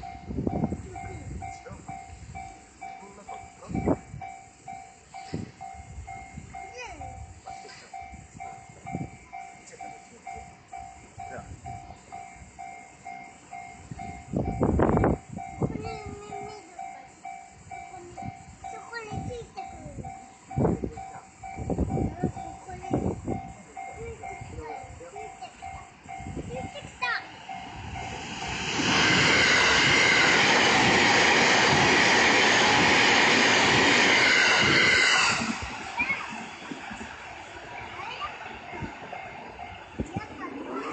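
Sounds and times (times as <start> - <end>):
level-crossing alarm bell ringing: 0.0 - 40.9
train rushing past: 0.0 - 40.9.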